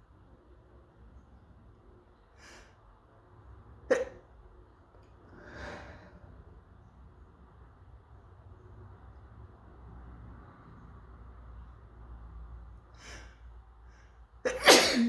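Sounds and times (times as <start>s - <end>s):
person sneezing: 3.9s - 4.2s, 14.5s - 15.0s
soft breathy exhale: 5.3s - 6.3s.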